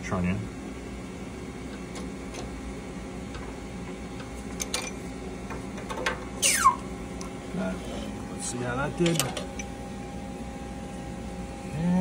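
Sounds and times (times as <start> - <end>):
sharp metal squeak: 6.4 - 6.8.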